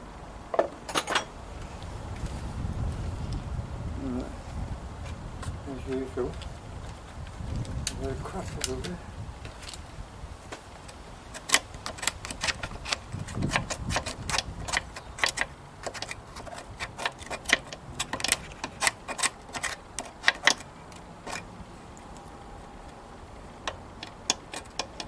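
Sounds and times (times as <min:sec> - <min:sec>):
metal parts clicking and clacking: 0:00.6 - 0:01.3, 0:10.8 - 0:23.0, 0:23.6 - 0:25.0
low rumble: 0:01.3 - 0:10.2.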